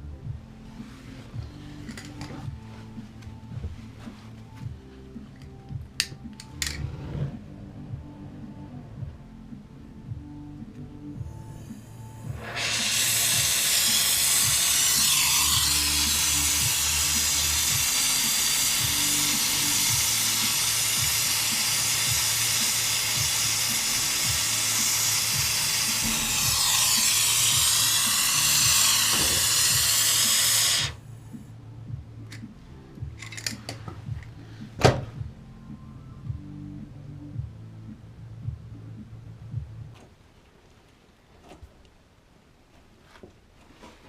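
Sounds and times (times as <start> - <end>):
pressurised gas hissing: 11.3 - 31.4.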